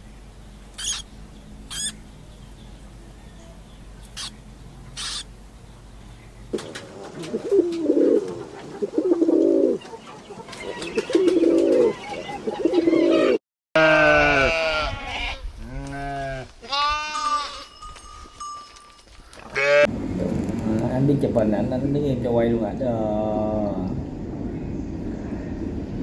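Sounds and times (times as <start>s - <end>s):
buzzy pitch-bending animal calls: 0.8s - 2.0s, 4.0s - 5.3s
low animal calls: 0.8s - 2.1s, 3.3s - 5.3s.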